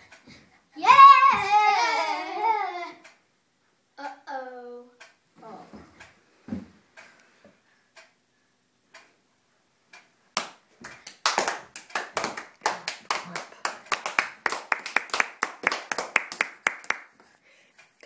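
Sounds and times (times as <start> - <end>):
people clapping: 10.4 - 17.3.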